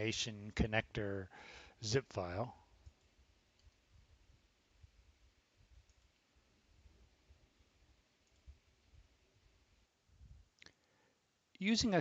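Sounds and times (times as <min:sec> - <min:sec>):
faint clicks: 0:02.8 - 0:03.9, 0:05.8 - 0:06.3, 0:08.2 - 0:08.6, 0:10.5 - 0:11.0.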